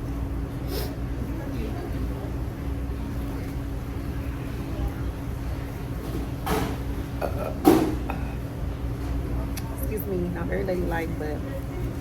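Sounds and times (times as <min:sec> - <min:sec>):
person burping loudly: 0:07.2 - 0:08.2.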